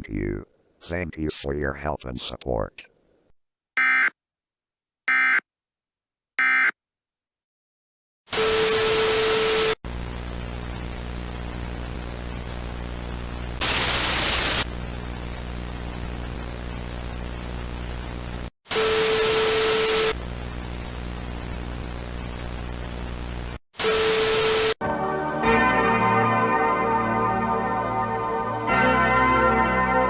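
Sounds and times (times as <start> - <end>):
loud static bursts: 13.6 - 14.7
steady tone: 24.8 - 30.0.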